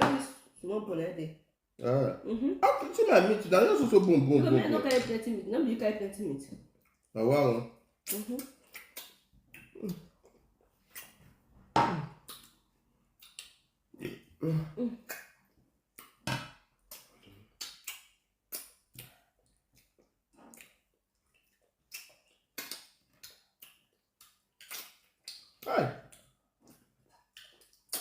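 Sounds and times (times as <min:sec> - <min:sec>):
eating clicks and mouth smacks: 0:06.8 - 0:07.1, 0:08.0 - 0:11.3, 0:12.2 - 0:12.6, 0:13.2 - 0:14.1, 0:15.1 - 0:28.0.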